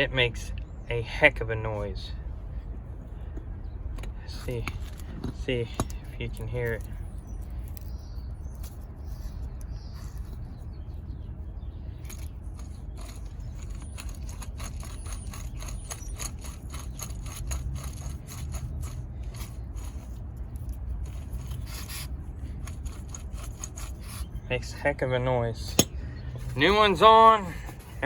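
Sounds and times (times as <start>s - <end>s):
bearing grinding when spun: 11.8s - 24.5s.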